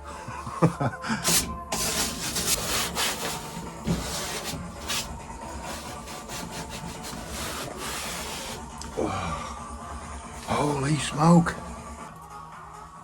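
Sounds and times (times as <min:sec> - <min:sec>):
brush scrubbing foam: 0:01.2 - 0:08.8.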